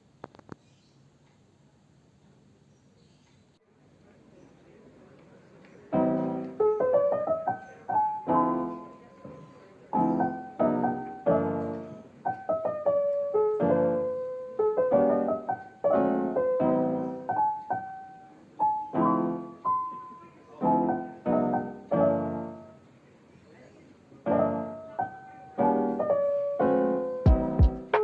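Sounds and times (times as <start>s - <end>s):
piano music: 5.9s - 22.9s, 24.2s - 28.0s.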